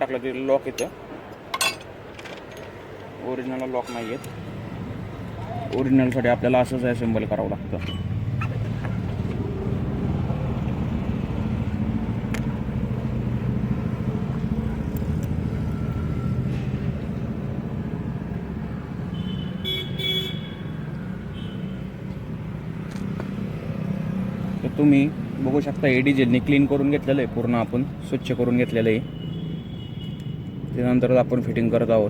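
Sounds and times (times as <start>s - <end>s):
road traffic rumble: 0.0s - 32.0s
vehicle horn tooting: 19.1s - 20.8s, 28.9s - 30.5s.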